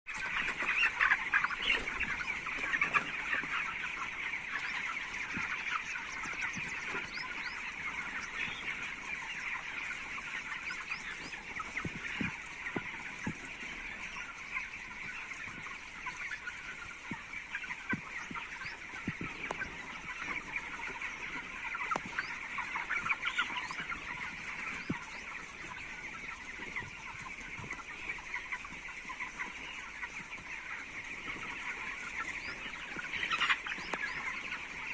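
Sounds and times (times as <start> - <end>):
chicks peeping and chirping: 0.1 - 34.9.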